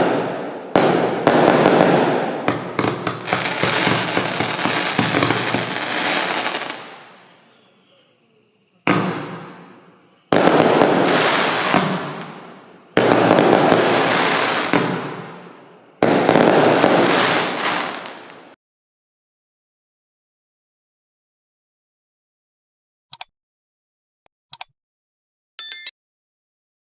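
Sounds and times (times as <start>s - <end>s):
firework volleys bursting: 0.0s - 7.3s, 8.9s - 18.6s.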